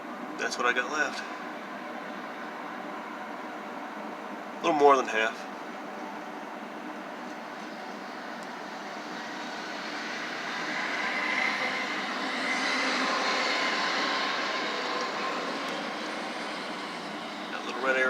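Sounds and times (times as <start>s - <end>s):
faint whine: 0.0s - 18.0s
large vehicle passing: 10.0s - 17.6s.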